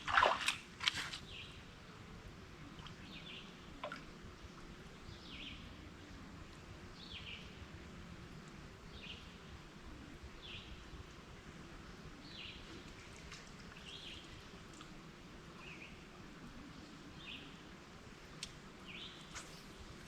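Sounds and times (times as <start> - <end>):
faint click: 18.4 - 18.6.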